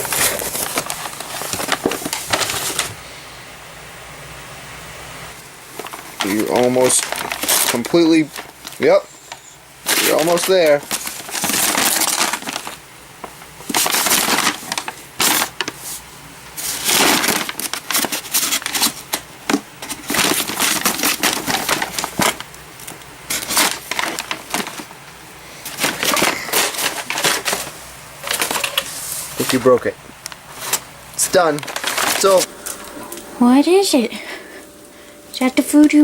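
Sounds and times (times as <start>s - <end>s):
crushing and crunching by hand: 30.2s - 33.0s.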